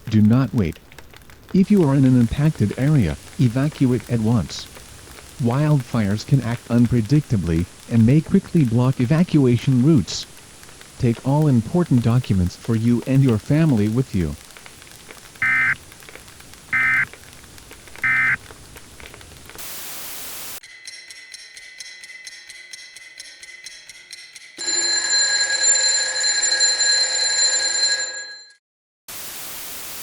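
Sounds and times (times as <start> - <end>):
digital data bursts: 15.4 - 15.8, 16.7 - 17.1, 18.0 - 18.4
loud electronic multi-tone sound: 16.8 - 17.1, 18.0 - 18.4
hiss-like noise: 19.5 - 20.6.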